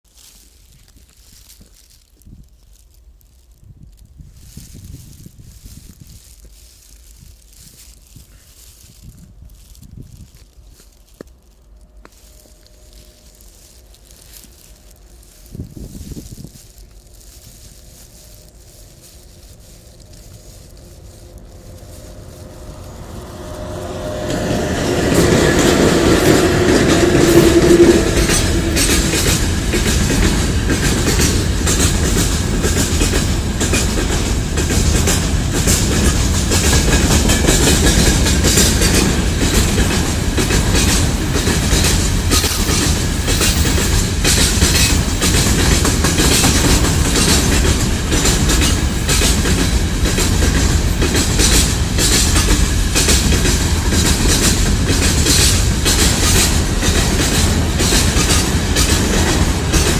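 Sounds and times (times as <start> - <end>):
train wheels clattering over rail joints: 19.8 - 59.9.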